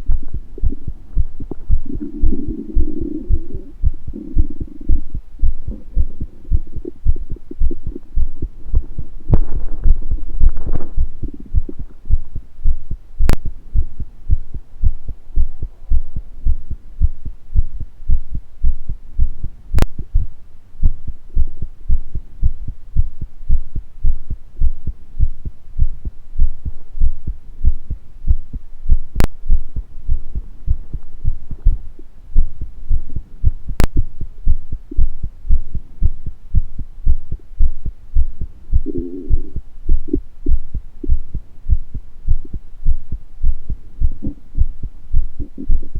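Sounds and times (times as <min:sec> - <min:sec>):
heartbeat thudding: 0:00.0 - 0:45.9
stomach gurgle: 0:00.4 - 0:12.4, 0:38.8 - 0:41.2.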